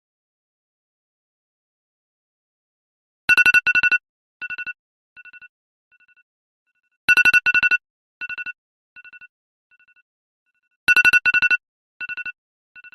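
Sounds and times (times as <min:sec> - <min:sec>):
rapid electronic timer beeps: 0:03.6 - 0:12.9.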